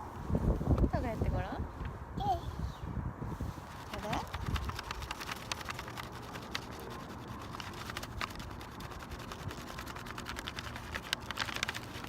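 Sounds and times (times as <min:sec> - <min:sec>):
crayon scratching on paper: 0:03.7 - 0:12.0.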